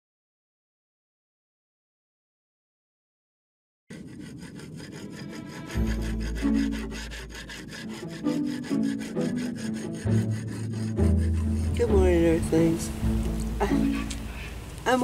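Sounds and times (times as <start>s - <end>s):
fast scraping percussion rhythm: 4.8s - 13.0s
held bass notes and chords: 11.4s - 14.5s.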